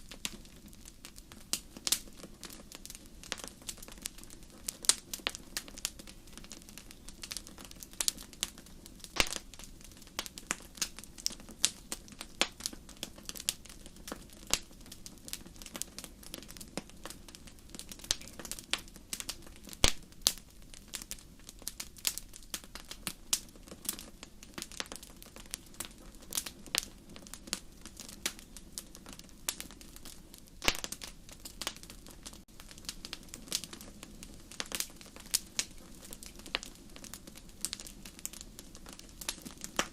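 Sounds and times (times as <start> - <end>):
raindrops tapping: 9.2 - 9.5.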